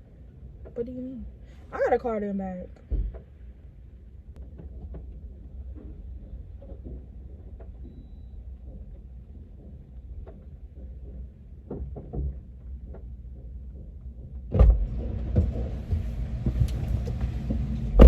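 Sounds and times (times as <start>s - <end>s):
car low rumble: 0.0s - 18.0s
outdoor noise: 0.0s - 18.0s
soft knocks: 2.8s - 3.4s.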